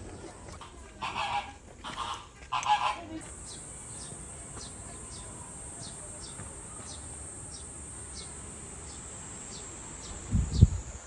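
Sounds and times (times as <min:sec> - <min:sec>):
high-pitched insect whine: 0:03.3 - 0:11.0.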